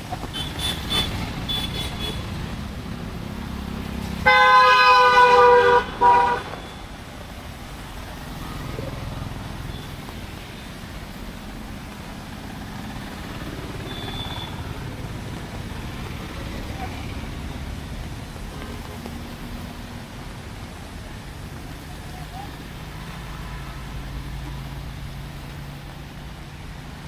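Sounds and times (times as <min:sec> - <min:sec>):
passing vehicle rumble: 0:00.0 - 0:27.0
street traffic noise: 0:00.0 - 0:27.0
vehicle horn honking: 0:00.3 - 0:02.4, 0:04.2 - 0:06.9.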